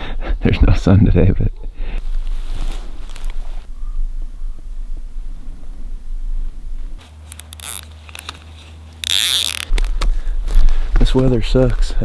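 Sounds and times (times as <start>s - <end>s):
wind rumbling on microphone: 0.2s - 7.0s
rustling: 1.8s - 12.0s.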